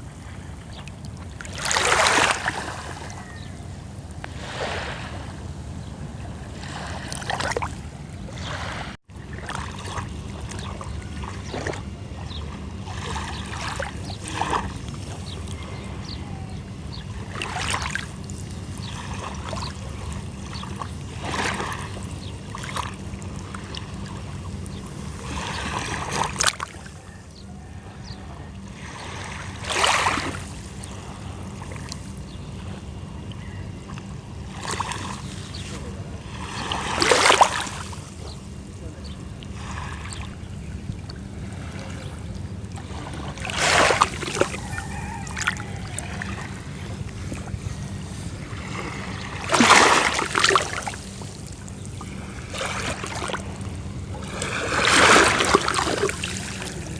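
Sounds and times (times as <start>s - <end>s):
sea waves washing onto shore: 0.0s - 3.4s, 4.0s - 5.6s, 34.4s - 56.9s.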